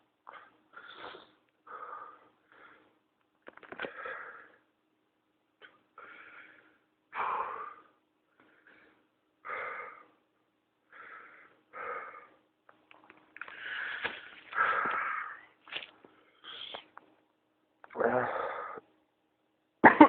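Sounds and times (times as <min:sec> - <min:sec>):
person wheezing breaths: 0:13.4 - 0:15.6.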